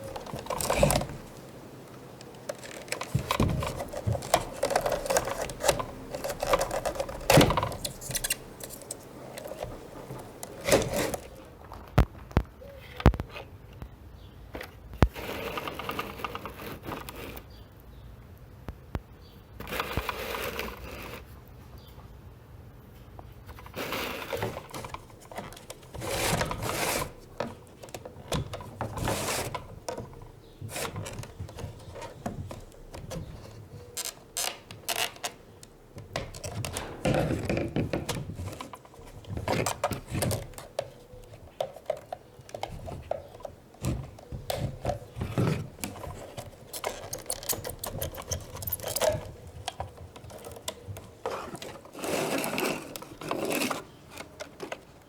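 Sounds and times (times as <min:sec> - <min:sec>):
hand tools clicking on car parts: 0:00.0 - 0:11.5, 0:24.3 - 0:55.0.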